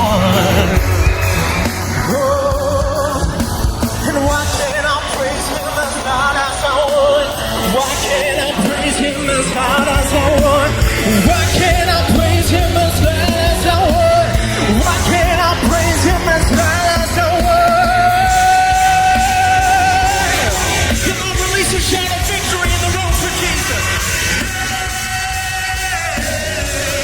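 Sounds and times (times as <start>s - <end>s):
person singing with vibrato: 0.0s - 27.0s
worship band playing: 0.0s - 27.0s.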